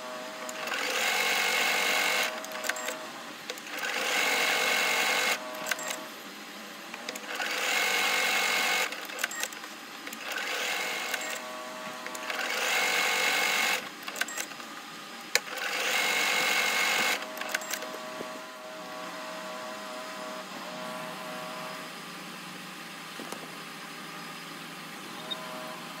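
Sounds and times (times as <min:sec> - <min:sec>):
steady machine hum: 0:00.0 - 0:26.0
sewing machine stitching: 0:00.5 - 0:06.0, 0:06.9 - 0:11.4, 0:12.0 - 0:14.7, 0:15.3 - 0:18.0.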